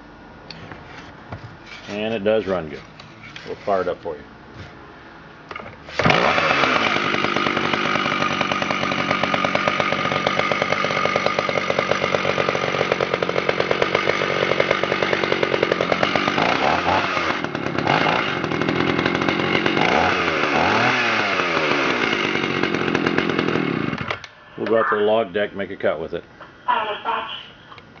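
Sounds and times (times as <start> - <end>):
chainsaw starting and revving: 5.8 - 24.3.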